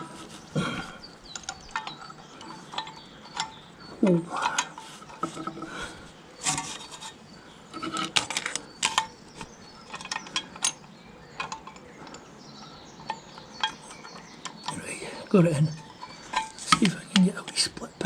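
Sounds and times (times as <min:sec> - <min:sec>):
small metallic clinks and taps: 0:01.3 - 0:03.7, 0:07.8 - 0:12.3.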